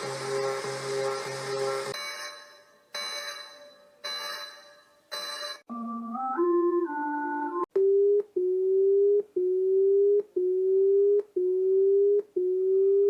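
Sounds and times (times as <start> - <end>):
low electronic alarm beeps: 2.0 - 6.1, 7.8 - 13.0.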